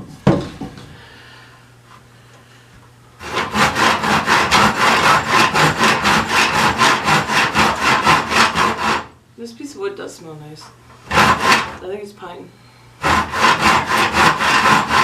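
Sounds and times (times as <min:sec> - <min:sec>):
hand saw cutting wood: 0:03.2 - 0:09.2, 0:11.0 - 0:11.8, 0:13.0 - 0:15.0.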